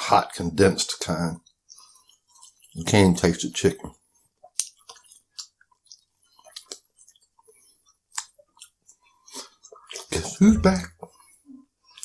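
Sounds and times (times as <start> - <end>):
chewing and eating: 1.4 - 3.0, 3.9 - 10.4, 11.0 - 12.0.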